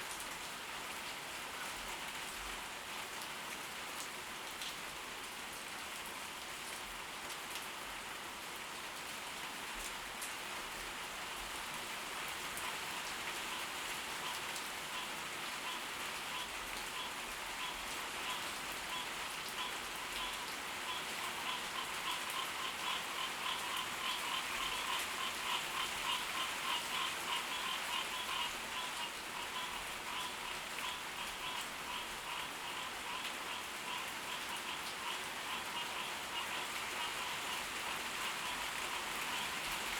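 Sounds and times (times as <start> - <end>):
heavy rain falling: 0.0 - 39.9
pulsing frog call: 19.0 - 37.5.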